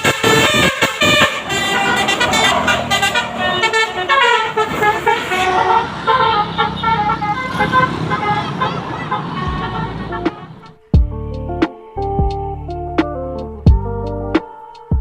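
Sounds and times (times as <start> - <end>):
multi-tone musical air horn: 0.0 - 10.9
bus engine running: 0.0 - 11.1.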